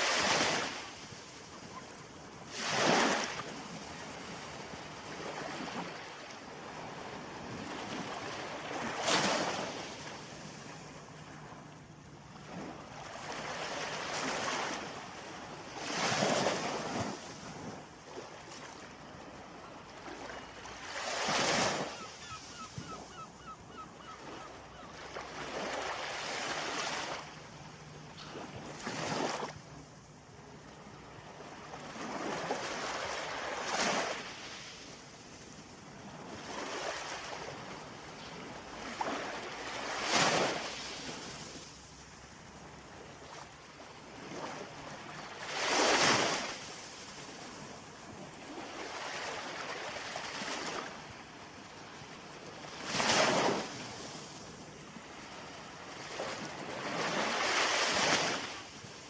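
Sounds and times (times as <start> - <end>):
ocean waves breaking: 0.0 - 18.8, 24.1 - 34.8.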